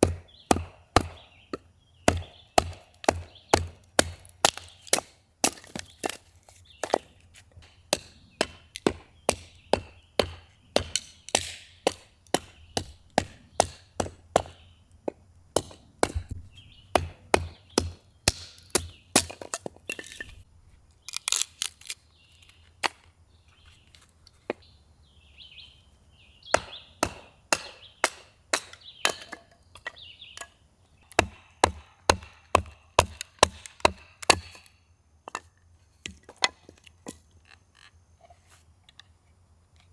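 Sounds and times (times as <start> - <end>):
chopping knocks on wood: 2.1 - 5.6, 7.9 - 14.6, 15.6 - 19.3.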